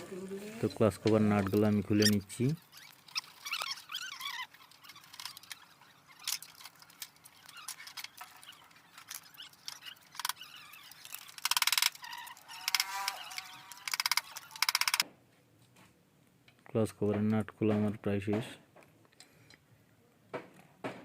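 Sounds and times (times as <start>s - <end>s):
ratchet clicking: 9.0s - 15.0s.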